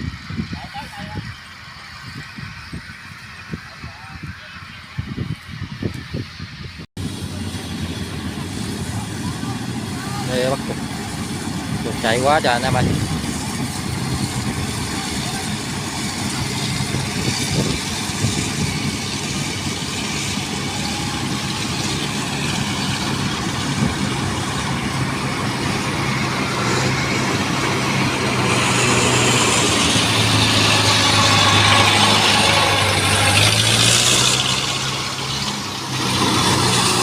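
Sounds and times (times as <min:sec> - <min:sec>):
combine harvester engine hum: 0:00.0 - 0:37.0.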